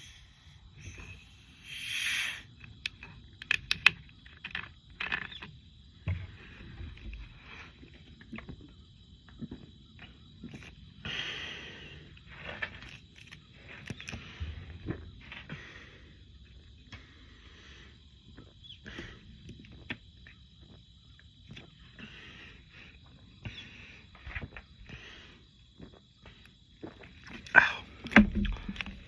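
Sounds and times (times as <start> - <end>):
short hiss: 0.0 - 2.5
person gulping soda: 26.8 - 29.0.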